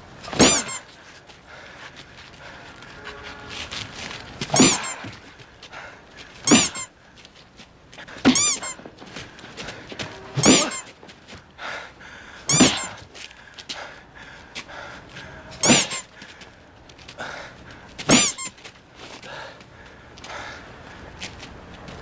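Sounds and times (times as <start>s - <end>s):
thump with wavering squeak: 0.3s - 0.9s, 4.5s - 5.2s, 6.5s - 6.9s, 8.2s - 8.9s, 9.9s - 11.0s, 12.5s - 13.0s, 18.1s - 18.6s.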